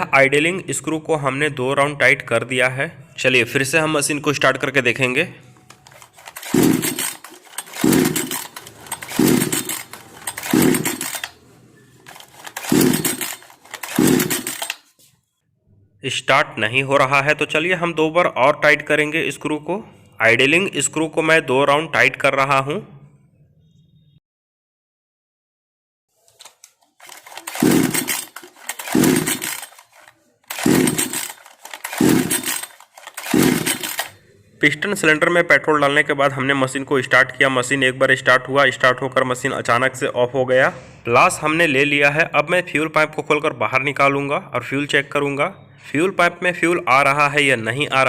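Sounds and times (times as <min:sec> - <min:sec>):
chainsaw recoil starter pulls: 0:05.6 - 0:15.0, 0:26.3 - 0:34.2.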